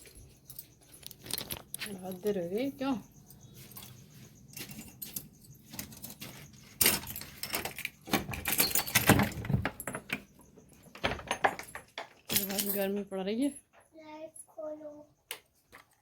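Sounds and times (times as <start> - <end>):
small hard objects clinking: 0.0 - 10.2.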